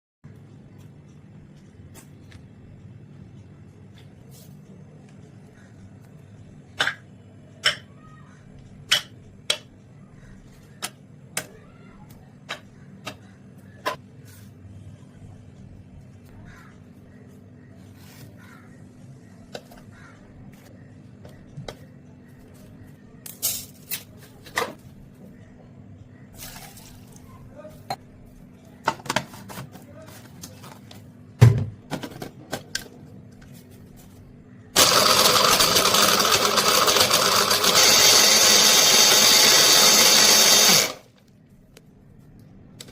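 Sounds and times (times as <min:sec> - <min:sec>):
electric blender running: 0:34.8 - 0:41.1.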